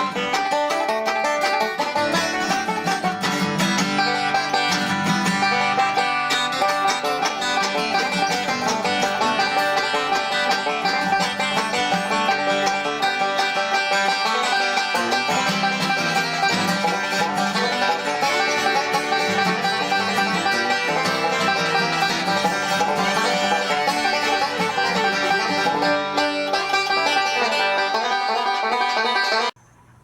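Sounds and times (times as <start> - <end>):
bluegrass tune with plucked banjo: 0.0 - 29.6.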